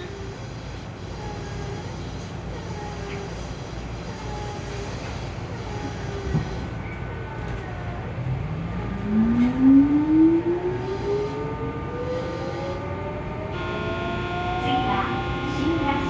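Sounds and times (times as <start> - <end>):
train running rumble: 0.0 - 16.0
electric train drive whine: 5.4 - 16.0.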